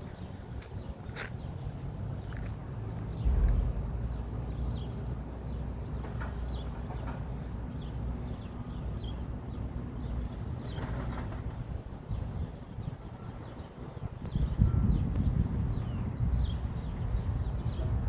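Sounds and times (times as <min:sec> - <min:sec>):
steady low rumble: 0:03.1 - 0:06.0.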